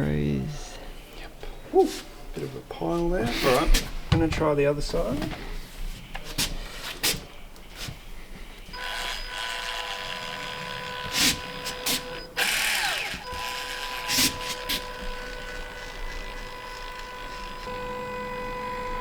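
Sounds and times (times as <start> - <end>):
power drill whining: 8.7 - 19.0.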